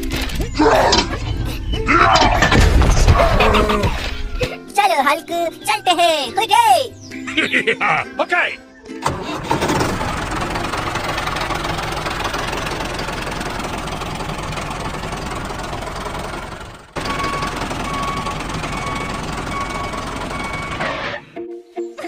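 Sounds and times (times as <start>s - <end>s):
engine running: 9.0s - 21.2s
repeating beep: 17.0s - 21.2s.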